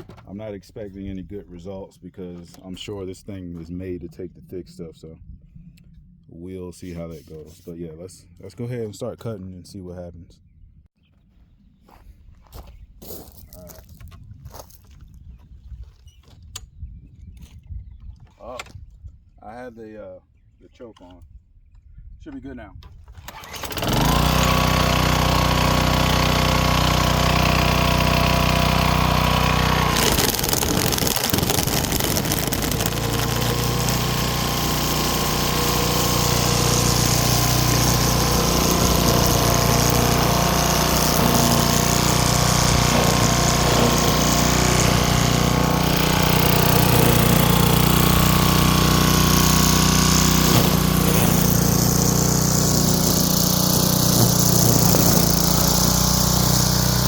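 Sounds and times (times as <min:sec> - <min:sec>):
string trimmer engine running: 0:23.2 - 0:57.0.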